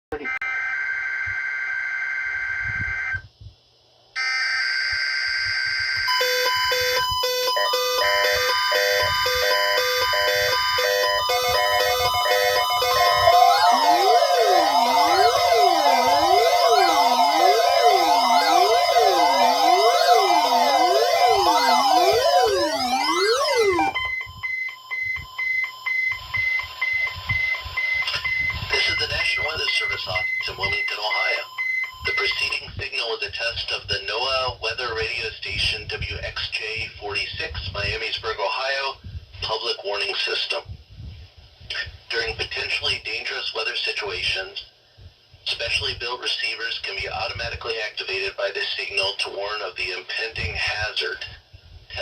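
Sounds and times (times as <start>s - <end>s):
weather radio alarm siren: 0.1s - 3.2s, 4.2s - 32.6s
electronic data screeching: 4.2s - 24.6s
two-pitch beeping tones: 6.0s - 32.6s.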